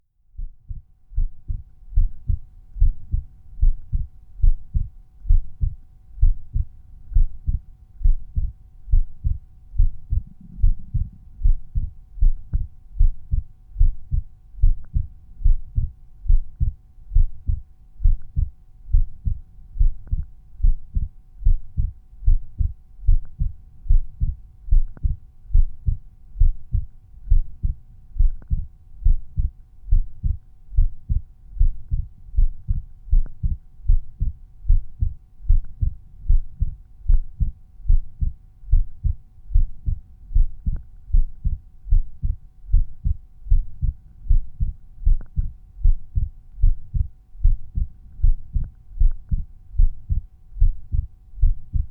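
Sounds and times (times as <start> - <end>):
heartbeat thumps: 0.4 - 51.9.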